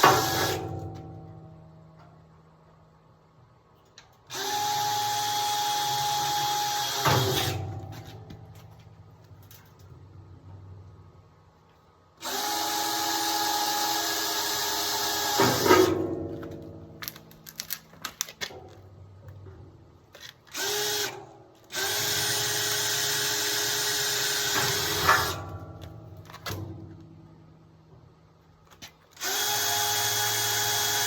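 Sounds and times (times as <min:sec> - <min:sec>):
power drill drilling into metal: 0:00.0 - 0:00.6, 0:04.3 - 0:07.6, 0:12.2 - 0:16.0, 0:20.5 - 0:25.5, 0:29.2 - 0:31.0.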